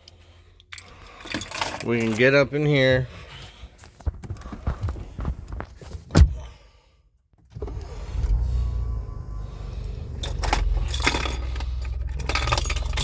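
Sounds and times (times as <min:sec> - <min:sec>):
loud thump: 0:06.1 - 0:06.5
steady low rumble: 0:07.6 - 0:13.0.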